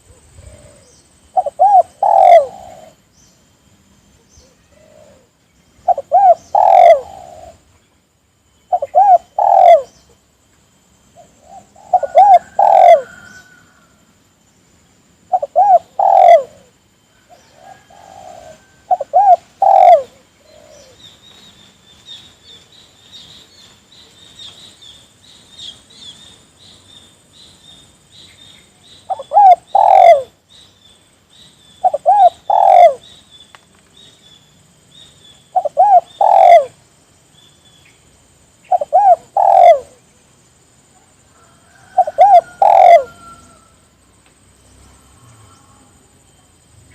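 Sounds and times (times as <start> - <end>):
dove cooing: 0.0 - 3.0, 4.4 - 7.7, 8.7 - 10.0, 11.2 - 13.6, 15.3 - 21.0, 29.1 - 30.4, 31.8 - 33.1, 35.5 - 36.8, 38.7 - 40.1, 41.7 - 43.7
faint high chirping: 0.0 - 46.9.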